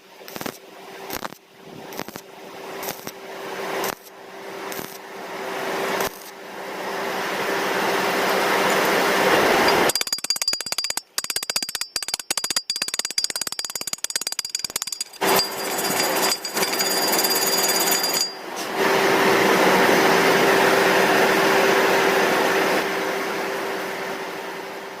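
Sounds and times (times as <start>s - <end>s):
arc welding crackle: 0.2s - 3.2s, 3.8s - 5.0s, 6.0s - 6.4s
welding hiss: 0.2s - 3.2s, 3.8s - 4.1s, 4.7s - 5.0s, 5.9s - 6.4s.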